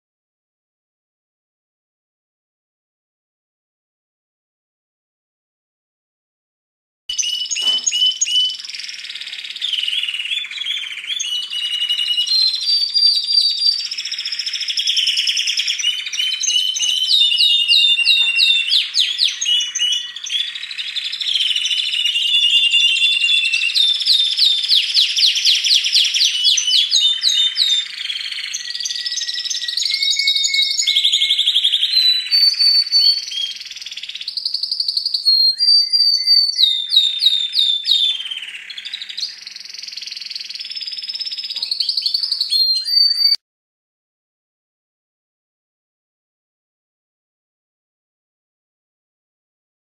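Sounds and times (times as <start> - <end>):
canaries singing trills: 7.1 - 43.4.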